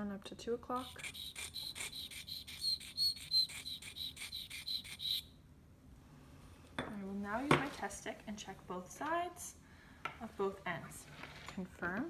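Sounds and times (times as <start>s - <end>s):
sharpening stone scraping steel blade: 0.8s - 5.3s.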